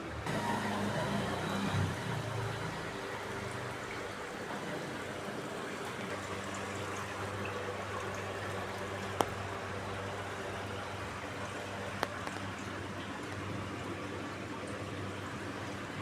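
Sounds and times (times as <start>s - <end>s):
water running through washing machine: 0.0s - 16.0s.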